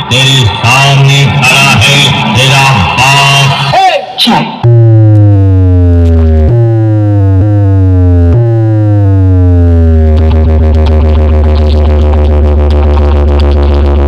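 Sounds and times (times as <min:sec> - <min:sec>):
buzzing pulsing bass tone: 0:04.6 - 0:14.0
synthesizer bass notes sliding down: 0:04.6 - 0:14.0.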